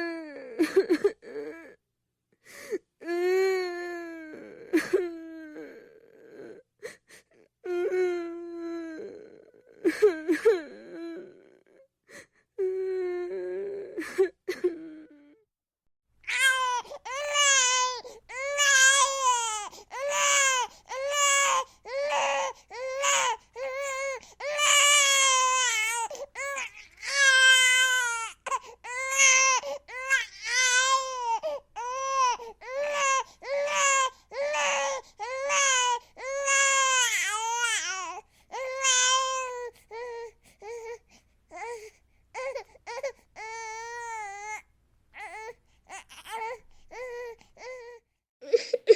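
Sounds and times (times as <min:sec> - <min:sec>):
infant whimper: 0:00.0 - 0:01.8, 0:03.0 - 0:11.9, 0:16.3 - 0:48.9
infant crying: 0:16.2 - 0:48.9.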